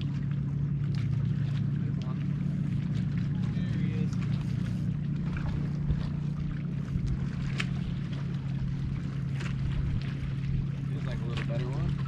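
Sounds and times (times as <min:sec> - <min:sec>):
boat motor humming: 0:00.0 - 0:12.0.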